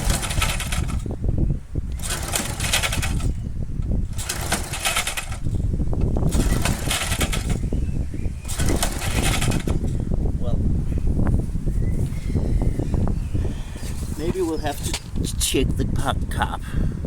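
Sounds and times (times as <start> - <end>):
lawn mower recoil starter pulls: 0.0 - 1.2, 1.8 - 10.1.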